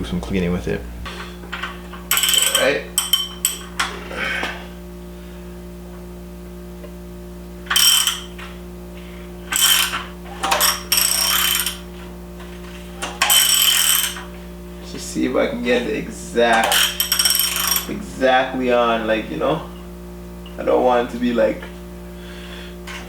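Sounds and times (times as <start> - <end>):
socket ratchet clicking: 2.1 - 3.7, 7.7 - 8.3, 9.5 - 11.8, 13.1 - 14.2, 16.6 - 17.9.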